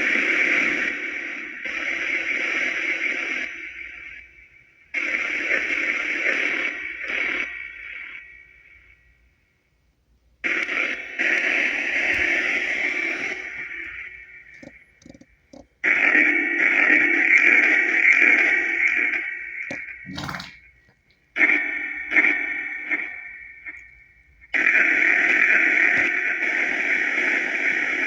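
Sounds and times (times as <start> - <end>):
white noise with echo: 10.3 - 28.0.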